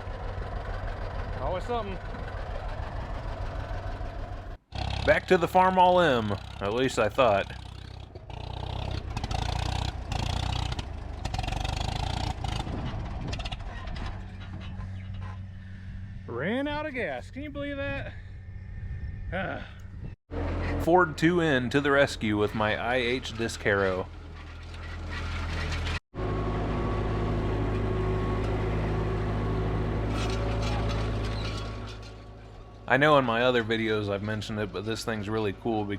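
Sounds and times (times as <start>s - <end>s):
tractor engine running unevenly: 0.0s - 16.1s, 20.3s - 35.9s.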